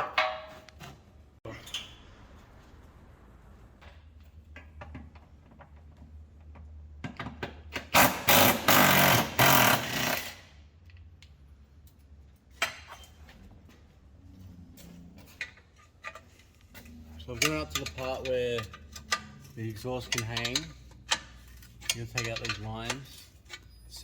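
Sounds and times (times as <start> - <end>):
impact wrench hammering: 7.7 - 10.4.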